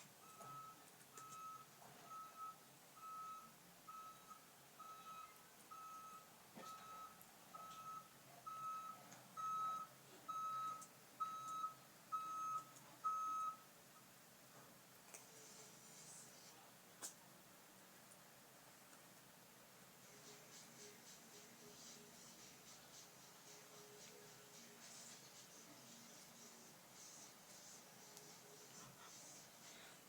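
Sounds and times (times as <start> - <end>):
reversing alarm beeping: 0.2 - 13.6.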